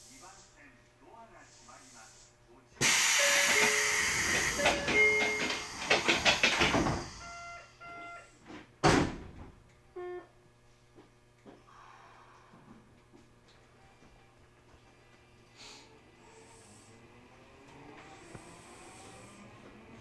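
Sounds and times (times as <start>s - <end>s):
train doors banging shut: 2.8s - 7.5s, 8.5s - 9.6s
short electronic beeps: 3.1s - 5.7s, 7.2s - 8.2s
two-note door chime: 3.2s - 5.8s.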